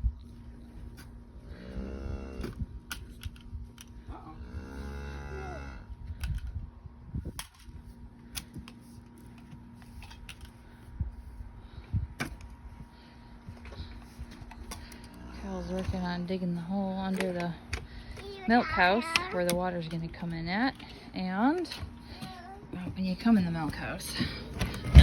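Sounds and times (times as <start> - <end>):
faint steady hum: 0.0 - 25.0
cow mooing: 1.5 - 2.6, 4.3 - 5.9.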